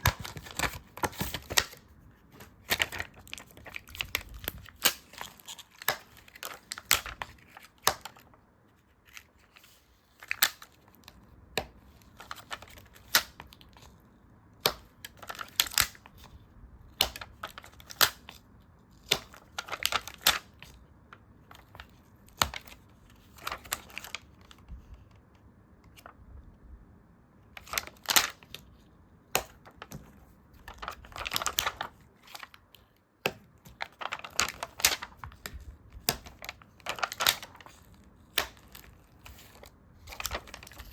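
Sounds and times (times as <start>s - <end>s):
stickers peeling and crinkling: 29.4s - 40.9s.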